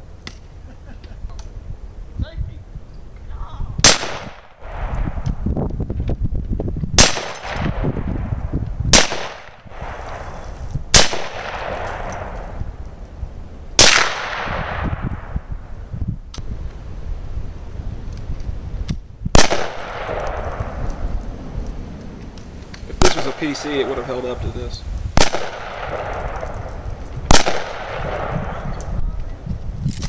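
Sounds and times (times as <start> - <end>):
gunshots echoing: 3.8 - 5.2, 7.0 - 8.3, 8.9 - 12.7, 13.8 - 15.4, 19.3 - 21.0, 22.9 - 28.9.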